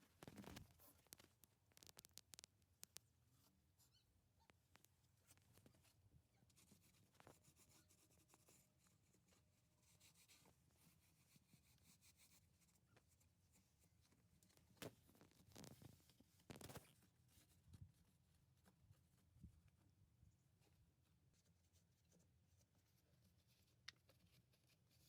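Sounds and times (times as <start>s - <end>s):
faint clicks: 0.2s - 3.2s.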